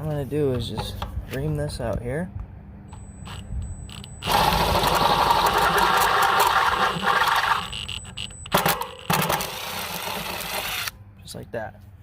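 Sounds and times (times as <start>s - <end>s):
power drill drilling: 4.2s - 8.0s, 9.2s - 10.9s.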